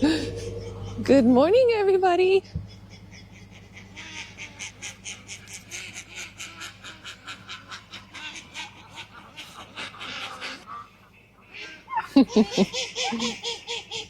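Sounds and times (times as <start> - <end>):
steady low hum: 0.0 - 13.8
ducks quacking: 2.8 - 14.0.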